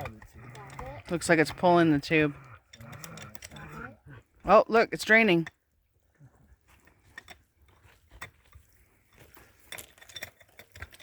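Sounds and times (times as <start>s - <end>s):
metal tools clinking on stone: 8.2s - 11.0s.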